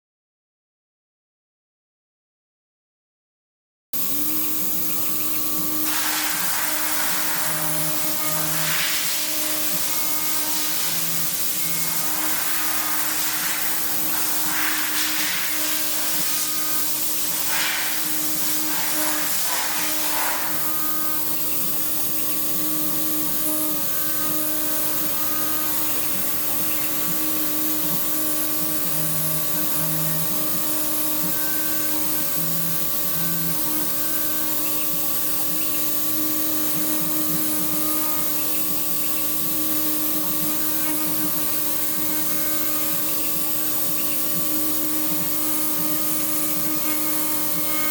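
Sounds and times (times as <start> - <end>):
milling machine spindle whine: 4.0 - 47.9
hissing bursts: 5.6 - 21.5.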